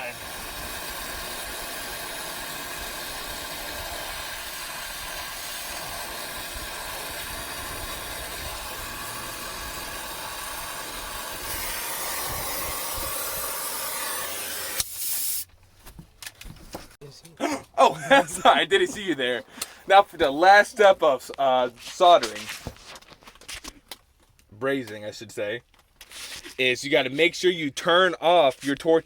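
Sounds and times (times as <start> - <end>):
torch flame hissing: 0.0 - 15.5
torch shutoff click: 0.0 - 15.5.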